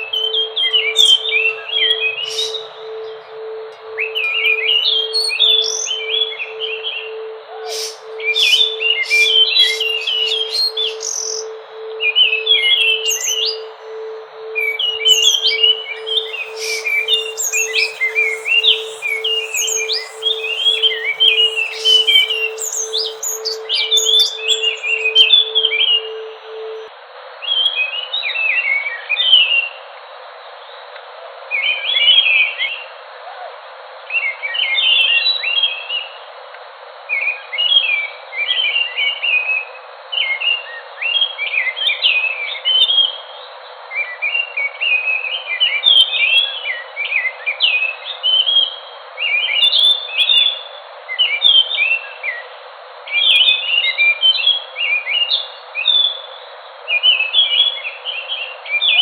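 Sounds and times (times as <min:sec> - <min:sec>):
bird whistling song: 0:00.0 - 0:26.8.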